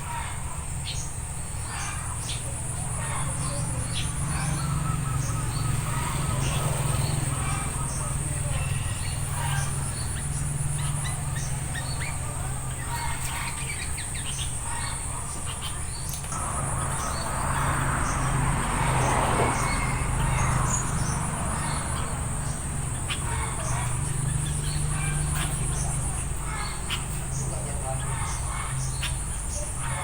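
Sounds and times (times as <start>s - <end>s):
bird chirps: 0.0s - 30.0s.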